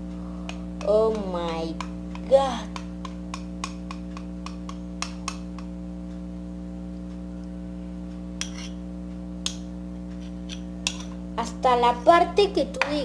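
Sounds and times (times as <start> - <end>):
low electrical hum: 0.0 - 13.0
utensils knocking against bowl: 0.5 - 5.7.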